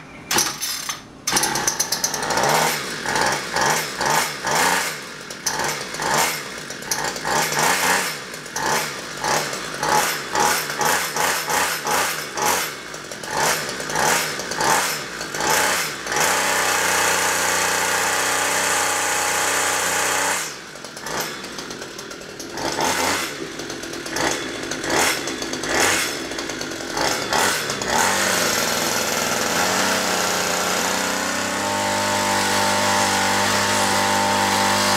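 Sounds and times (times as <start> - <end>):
string trimmer engine running rough: 0.3 - 34.9.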